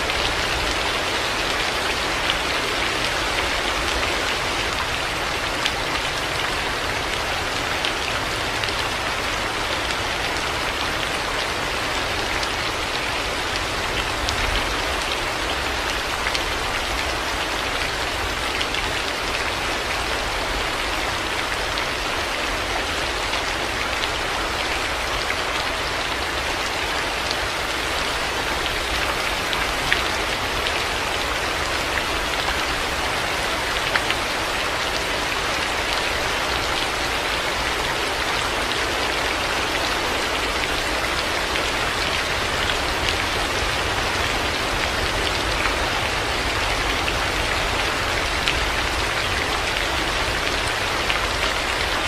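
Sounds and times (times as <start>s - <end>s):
heavy rain falling: 0.0s - 52.0s.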